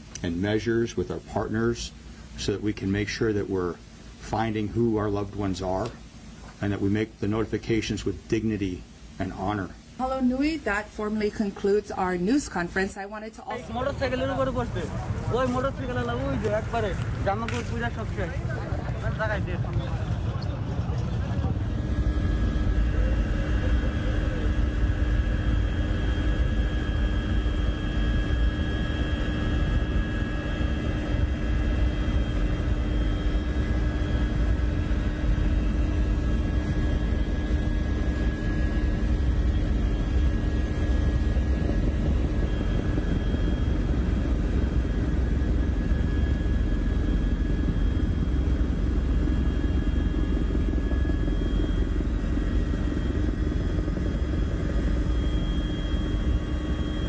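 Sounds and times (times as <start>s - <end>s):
constant whining tones: 9.9s - 57.0s
low mechanical rumble: 13.4s - 57.0s.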